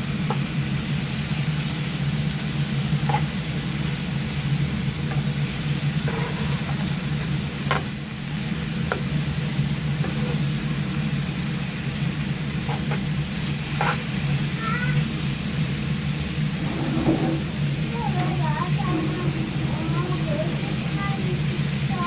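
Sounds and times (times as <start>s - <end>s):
meat sizzling in a frying pan: 0.0s - 16.3s
steady low hum: 15.0s - 22.0s.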